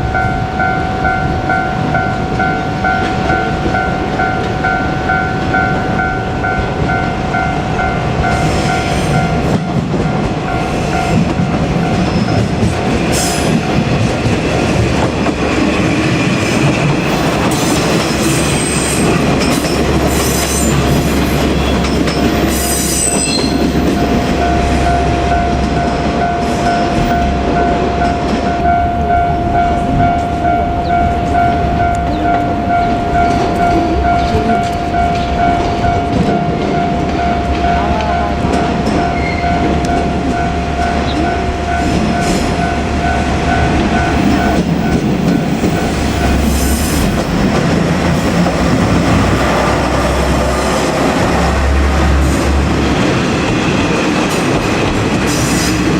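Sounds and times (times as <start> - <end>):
level crossing bell ringing: 0.0 - 12.6, 20.7 - 47.6
train engine and wheel rumble: 0.0 - 55.9
high wheel squeals: 17.0 - 27.4, 39.1 - 43.0.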